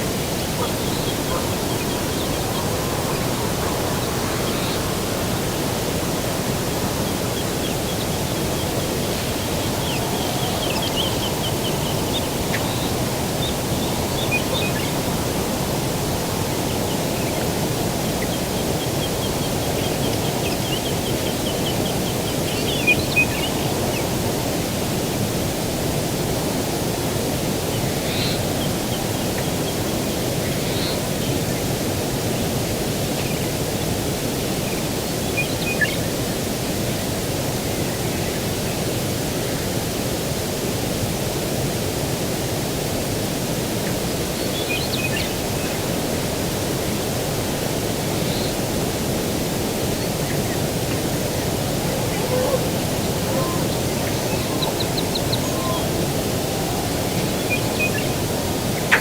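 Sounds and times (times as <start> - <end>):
breeze rushing: 0.0 - 30.4, 45.2 - 59.0
bird chirps: 50.3 - 58.2
bird trilling: 50.3 - 58.3.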